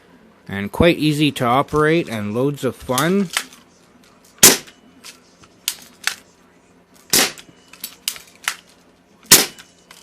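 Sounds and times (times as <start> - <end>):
air pistol shots cracking: 4.4 - 4.7, 7.1 - 7.5, 9.3 - 9.7.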